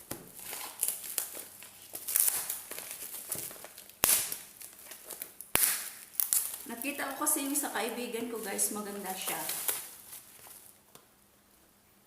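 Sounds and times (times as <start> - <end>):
packaging rustling and crinkling: 0.0 - 10.9
sharp snaps: 5.4 - 6.6.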